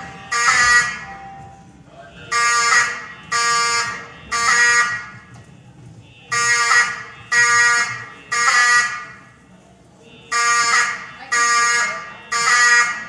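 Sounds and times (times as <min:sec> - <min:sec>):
fire alarm horn buzzing blasts: 0:00.0 - 0:01.5, 0:02.3 - 0:05.2, 0:06.3 - 0:09.3, 0:10.2 - 0:13.0.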